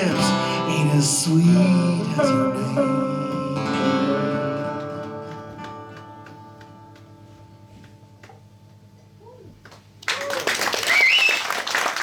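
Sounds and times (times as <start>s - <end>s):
acoustic guitar chord ringing: 0.0s - 8.6s.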